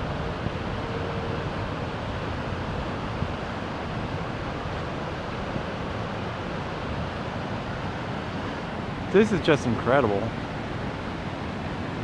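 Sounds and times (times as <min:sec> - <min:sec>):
wind buffeting microphone: 0:00.0 - 0:09.2
fast river rushing: 0:00.0 - 0:12.0.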